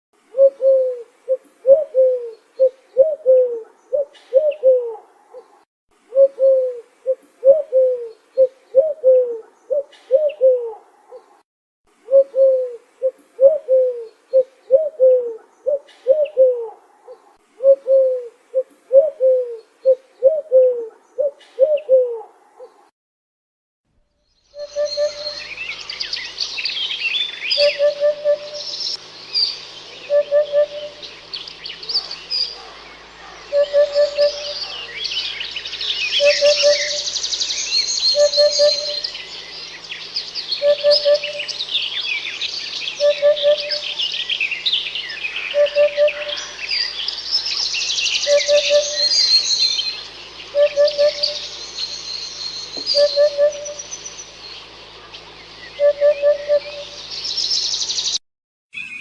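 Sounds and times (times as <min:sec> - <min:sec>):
birds twittering: 0:00.4 - 0:05.6, 0:24.3 - 0:58.2.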